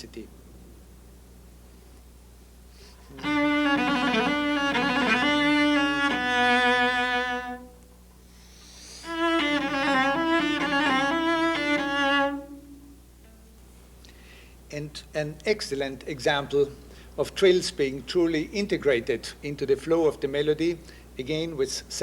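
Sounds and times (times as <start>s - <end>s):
solo cello playing: 3.1s - 7.8s, 9.0s - 13.4s.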